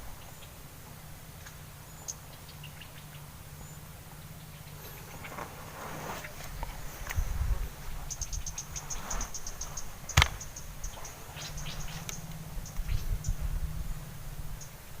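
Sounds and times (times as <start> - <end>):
insect ticking chirps: 8.0 - 14.9.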